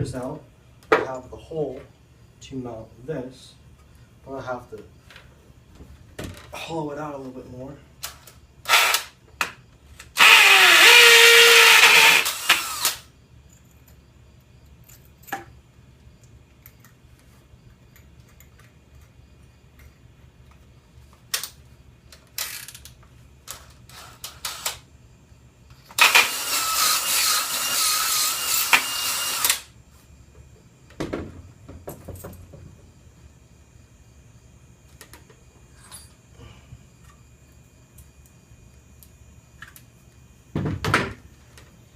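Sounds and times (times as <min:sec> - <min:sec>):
power drill running: 0:08.7 - 0:09.1, 0:10.2 - 0:13.0, 0:25.9 - 0:29.7.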